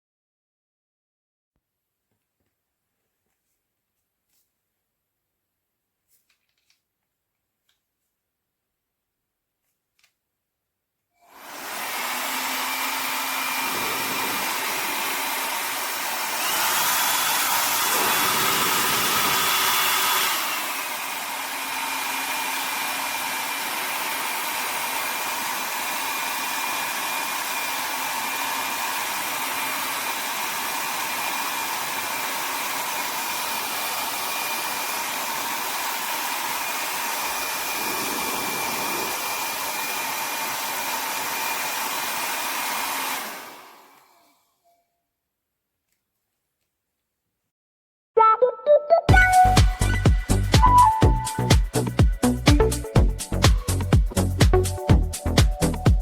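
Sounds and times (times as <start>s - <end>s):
hair dryer running: 11.2s - 44.4s, 49.1s - 56.0s.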